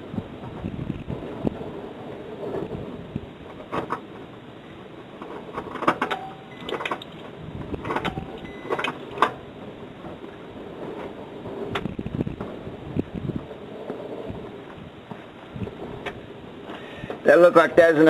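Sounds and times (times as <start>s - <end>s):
sharp clicks and knocks: 3.5s - 4.1s, 5.2s - 9.4s, 11.7s - 12.6s.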